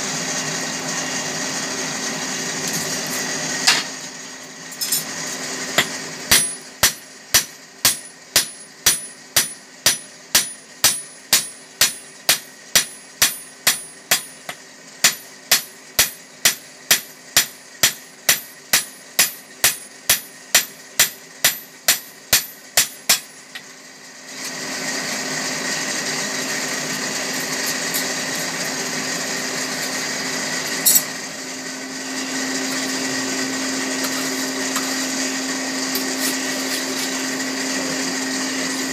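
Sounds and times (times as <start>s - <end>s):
hammer ringing on anvil: 5.8s - 23.5s
electric blower hum: 24.4s - 38.9s.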